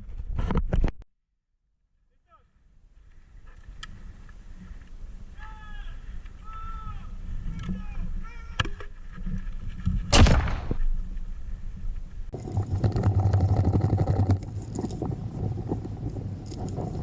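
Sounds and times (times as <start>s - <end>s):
sharp bang: 10.1s - 10.8s
rattling and scraping: 12.3s - 17.0s.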